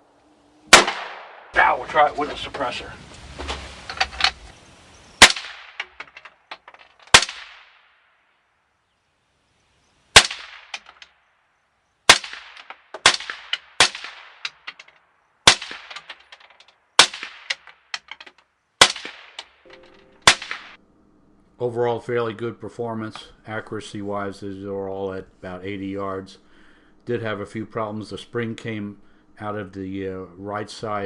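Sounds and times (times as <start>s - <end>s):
suppressed rifle shots: 0.7s - 1.6s, 5.2s - 7.9s, 10.2s - 11.1s, 12.1s - 16.4s, 17.0s - 18.2s, 18.8s - 19.6s, 20.2s - 20.8s
gunshot echo: 0.7s - 1.8s, 5.2s - 6.1s, 7.1s - 8.0s, 10.2s - 11.0s, 12.1s - 14.7s, 15.5s - 16.2s, 17.0s - 17.7s, 18.8s - 19.6s, 20.2s - 20.8s.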